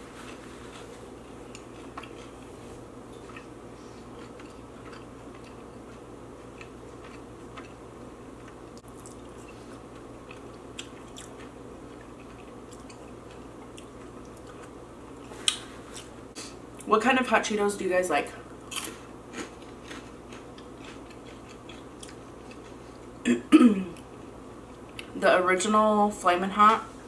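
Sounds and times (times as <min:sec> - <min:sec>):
chewing crunchy snacks: 0:00.2 - 0:02.5, 0:03.2 - 0:16.1, 0:18.7 - 0:23.1
room heater air rushing: 0:15.2 - 0:16.7.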